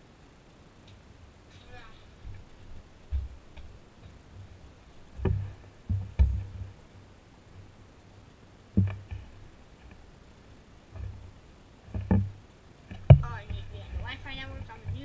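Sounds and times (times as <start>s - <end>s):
dull thumps and knocks: 3.1s - 4.2s, 5.1s - 6.8s, 8.7s - 10.0s, 11.9s - 15.0s.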